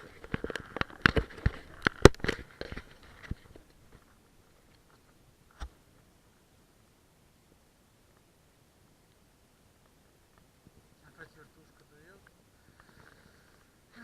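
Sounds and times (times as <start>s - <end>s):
sharp clicks and knocks: 0.0s - 4.0s.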